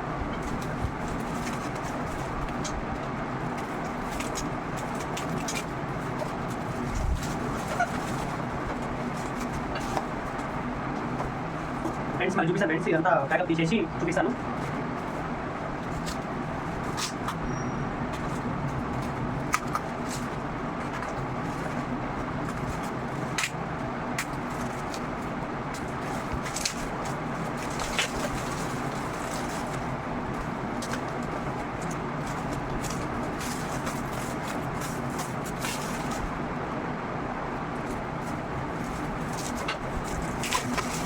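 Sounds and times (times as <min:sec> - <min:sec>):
steady background noise: 0:00.0 - 0:41.0
packaging clicks and crackles: 0:38.7 - 0:41.0.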